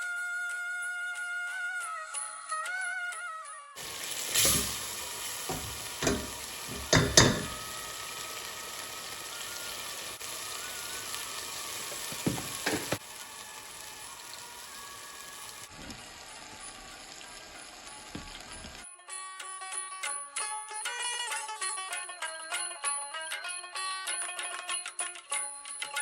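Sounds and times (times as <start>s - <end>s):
food sizzling in a pan: 3.8s - 18.8s
spatula scraping a pan: 4.3s - 4.8s, 5.5s - 7.7s.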